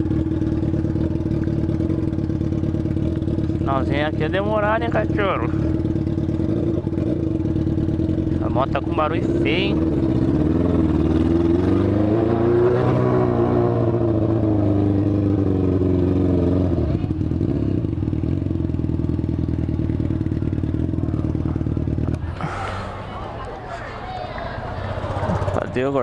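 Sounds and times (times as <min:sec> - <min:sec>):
motorcycle engine droning: 0:00.0 - 0:26.0
rider talking: 0:03.6 - 0:05.8, 0:08.2 - 0:10.0, 0:20.3 - 0:26.0.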